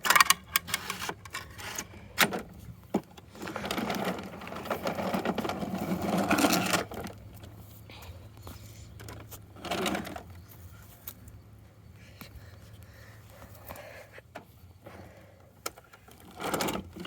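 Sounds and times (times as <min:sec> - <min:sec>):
toy mechanism rattling and whirring: 0:00.0 - 0:01.9.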